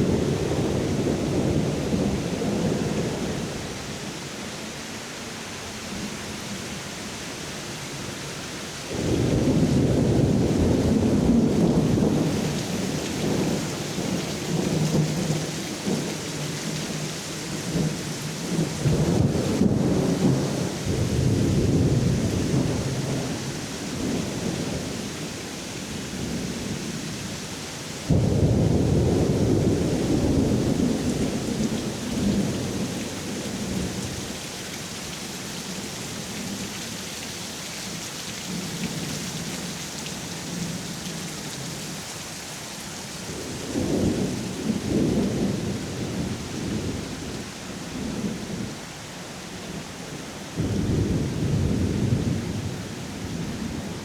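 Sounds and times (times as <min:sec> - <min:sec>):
steady rain falling: 0:00.0 - 0:54.0
thunder rumbling: 0:08.9 - 0:17.0, 0:28.1 - 0:34.2.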